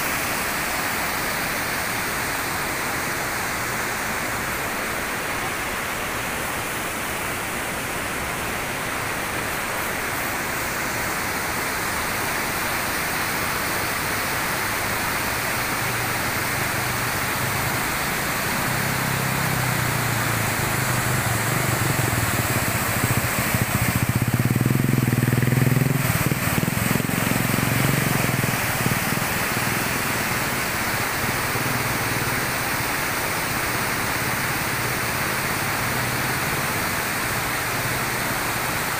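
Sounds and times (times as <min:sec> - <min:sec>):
waterfall rushing: 0:00.0 - 0:38.9
motor engine: 0:14.8 - 0:38.1.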